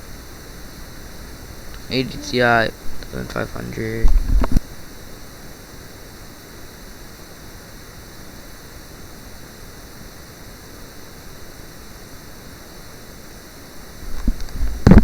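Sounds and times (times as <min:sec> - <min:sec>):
low background hiss: 0:00.0 - 0:04.6.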